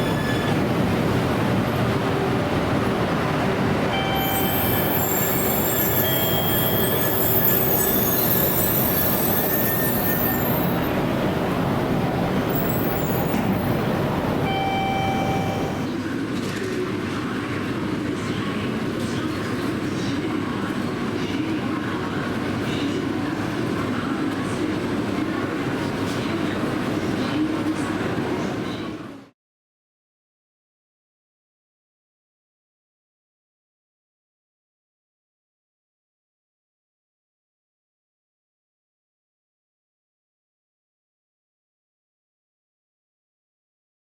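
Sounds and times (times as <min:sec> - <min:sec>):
wheel and brake squeal: 0:00.0 - 0:00.6, 0:04.1 - 0:10.8
train rumble: 0:00.0 - 0:28.6.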